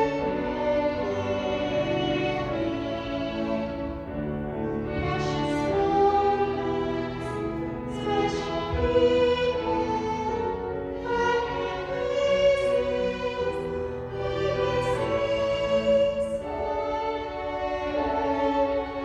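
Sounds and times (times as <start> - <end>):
piano playing: 0.0 - 19.0
violins playing slow piece: 0.0 - 19.0.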